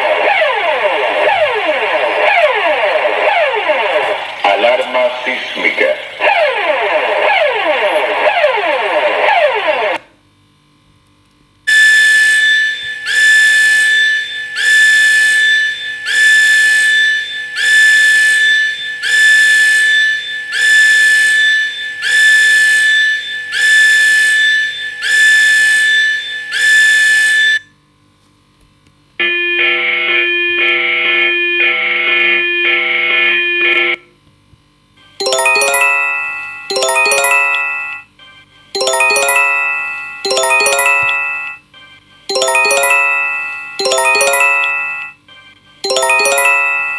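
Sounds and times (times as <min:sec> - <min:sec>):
sweeping siren: 0:00.0 - 0:04.4, 0:06.1 - 0:10.0
pulsing multi-tone alarm: 0:00.2 - 0:04.2, 0:06.2 - 0:10.0, 0:11.8 - 0:27.5, 0:35.2 - 0:38.1, 0:38.8 - 0:41.7, 0:42.3 - 0:45.3, 0:45.9 - 0:46.9
harsh high beep: 0:35.2 - 0:38.1, 0:38.8 - 0:41.6, 0:42.3 - 0:45.2, 0:45.9 - 0:46.9
chime: 0:35.2 - 0:38.2, 0:38.8 - 0:41.7, 0:42.3 - 0:46.9.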